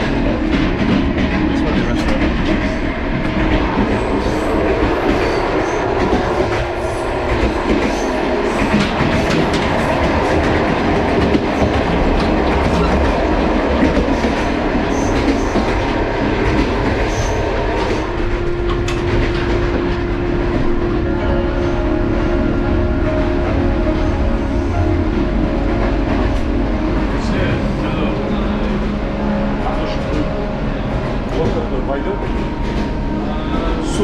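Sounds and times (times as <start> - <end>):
train rumble: 0.0 - 34.0
steady hum: 24.9 - 34.0.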